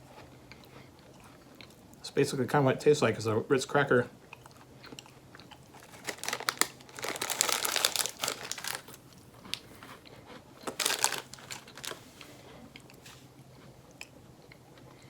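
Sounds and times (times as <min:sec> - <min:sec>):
snack wrapper crinkling: 0:05.4 - 0:13.1.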